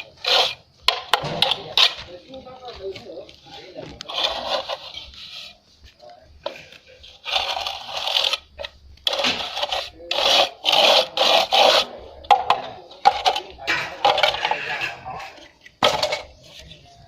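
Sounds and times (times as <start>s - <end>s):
trowel rasping on cement render: 0.0s - 1.0s, 4.0s - 5.6s, 6.7s - 15.5s.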